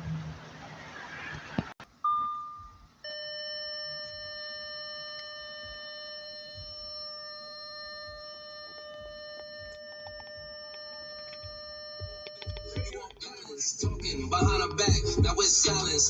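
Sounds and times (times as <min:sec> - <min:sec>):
steady electronic tone: 0:00.0 - 0:13.0
short electronic beep: 0:02.0 - 0:13.0.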